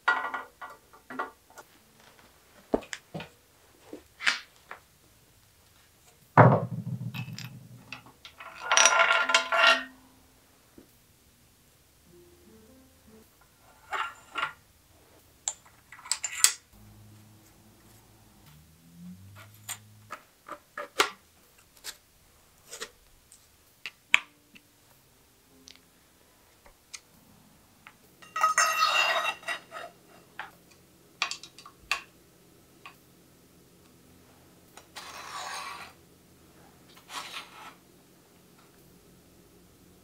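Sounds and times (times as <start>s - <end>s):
metal parts clicking and clinking: 7.1s - 10.0s, 15.4s - 16.7s, 19.4s - 21.1s.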